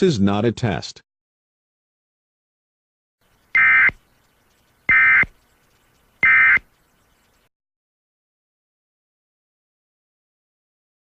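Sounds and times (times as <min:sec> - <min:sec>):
buzzy two-tone data warble: 0:03.5 - 0:07.4.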